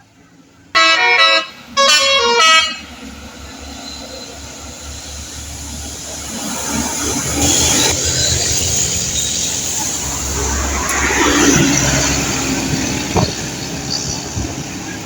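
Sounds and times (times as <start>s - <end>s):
vehicle engine and road noise: 0.0s - 15.0s
musical air horn: 0.8s - 3.0s.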